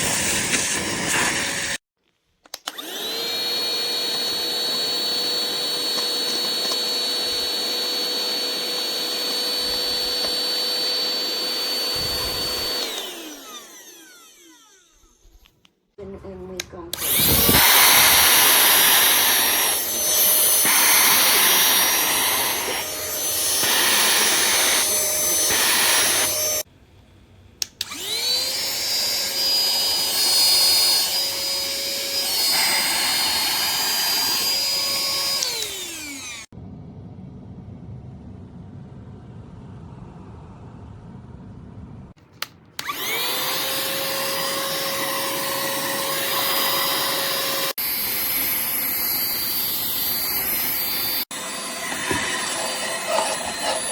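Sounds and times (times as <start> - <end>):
handheld vacuum motor running: 0.0 - 1.8, 2.6 - 15.5, 16.9 - 26.7, 27.8 - 36.5, 42.8 - 53.9
low hum: 36.6 - 42.2.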